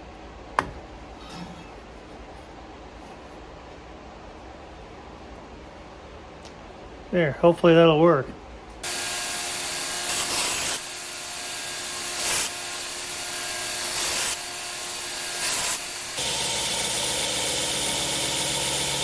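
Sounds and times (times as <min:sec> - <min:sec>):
belt grinder grinding knife blade: 0:08.8 - 0:19.0.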